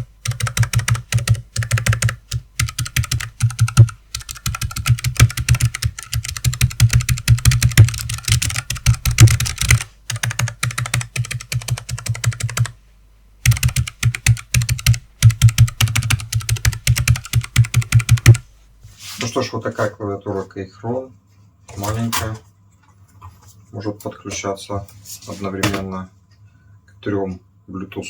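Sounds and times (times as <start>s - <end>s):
fast mechanical keyboard typing: 0.0s - 12.8s, 13.4s - 18.4s.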